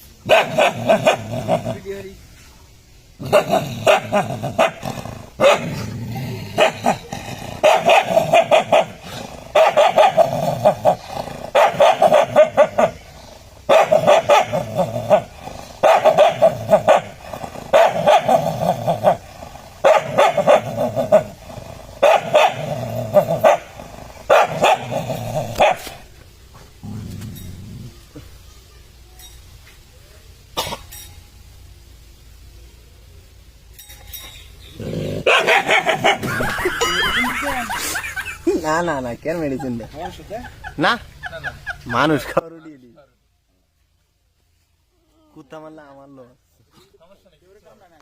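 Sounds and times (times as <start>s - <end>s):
dog barking aggressively: 0.2s - 1.8s, 3.2s - 6.0s, 6.6s - 26.1s, 35.2s - 38.3s
dog growling: 0.5s - 2.0s, 3.2s - 26.0s, 34.7s - 36.3s.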